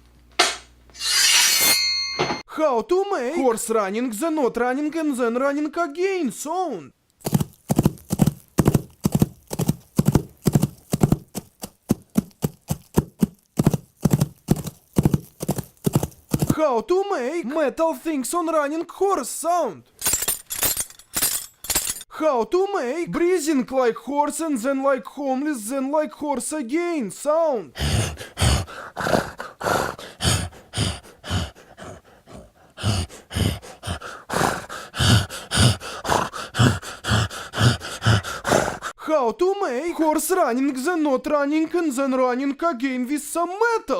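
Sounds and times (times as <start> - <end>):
man imitating horse breathing: 7.2 - 11.5, 12.1 - 16.6, 27.6 - 39.0
horse hoofbeats galloping: 7.2 - 16.6.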